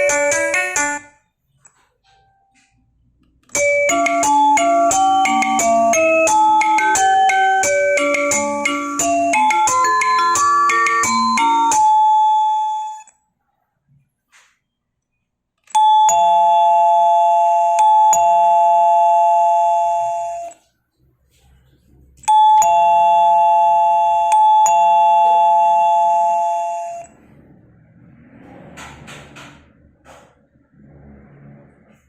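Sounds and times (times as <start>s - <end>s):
doorbell ding-dong chime: 0.0s - 1.1s, 3.5s - 13.1s, 15.7s - 20.6s, 22.3s - 27.1s.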